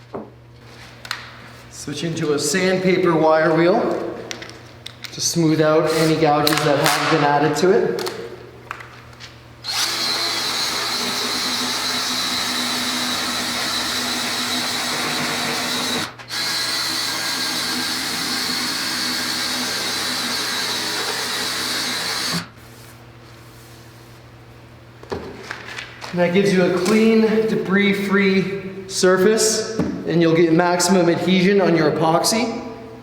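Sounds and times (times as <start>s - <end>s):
power tool sanding wood: 9.7s - 22.5s.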